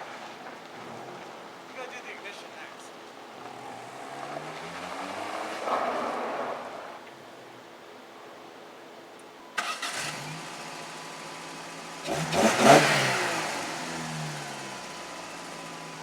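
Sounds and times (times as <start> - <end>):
car engine starting and idling: 9.5 - 16.0.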